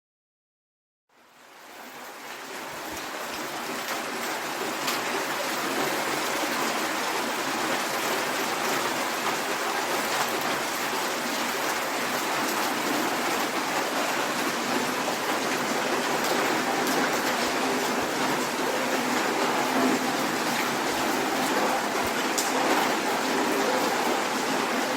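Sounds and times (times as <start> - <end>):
steady hiss of rain: 1.1 - 24.9
raindrops ticking: 7.1 - 24.9.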